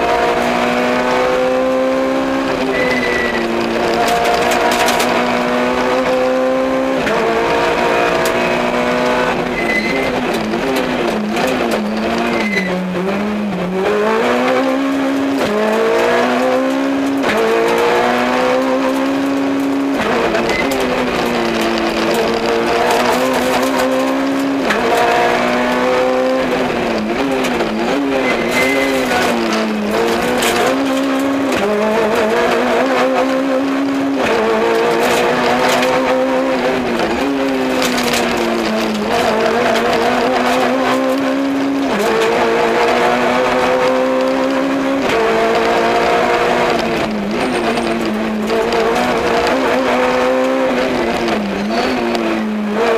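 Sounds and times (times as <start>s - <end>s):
car engine revving hard: 0.0s - 52.9s.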